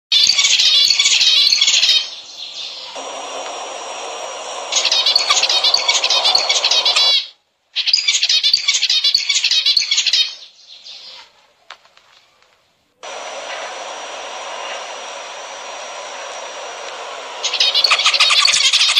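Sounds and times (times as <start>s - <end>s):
finches chirping: 0.1s - 11.2s, 17.4s - 18.9s
steady hiss: 0.5s - 7.3s, 12.4s - 18.9s.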